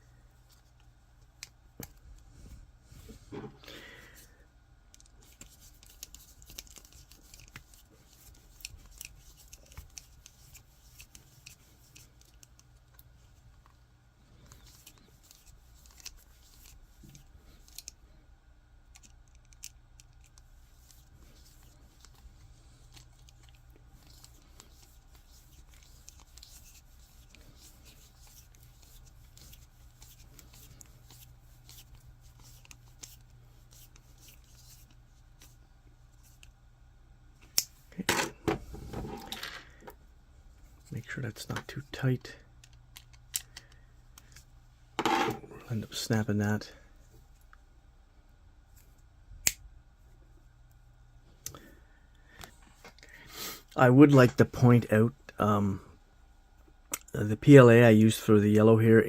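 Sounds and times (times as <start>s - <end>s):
low background hum: 0.0s - 59.0s
plastic parts clicking and scraping: 14.4s - 18.0s, 18.9s - 22.2s, 42.6s - 44.4s.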